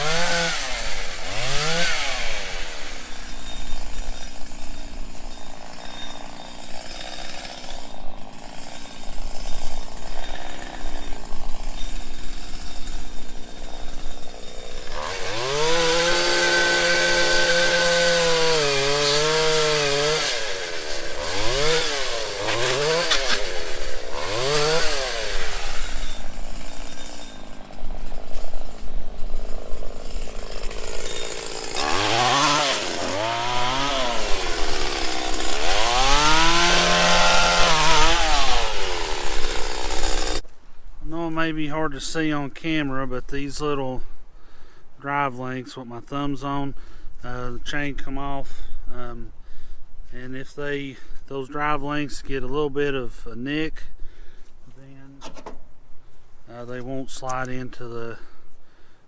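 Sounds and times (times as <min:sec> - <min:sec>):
chainsaw revving: 0:00.0 - 0:40.5.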